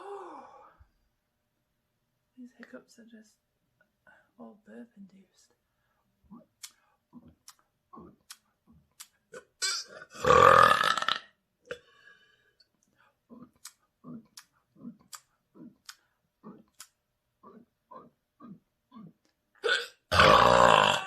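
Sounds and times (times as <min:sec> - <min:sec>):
small throat sounds: 0:06.3 - 0:12.0, 0:13.3 - 0:21.0
person burping loudly: 0:09.4 - 0:11.8, 0:17.4 - 0:21.0.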